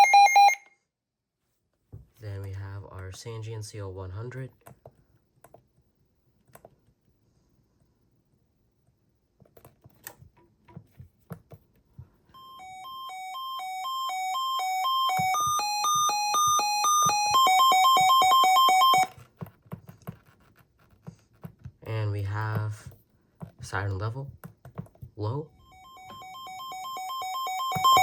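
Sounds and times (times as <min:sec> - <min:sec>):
electronic two-tone beeping: 0:00.0 - 0:00.6, 0:12.4 - 0:19.1, 0:25.6 - 0:28.0.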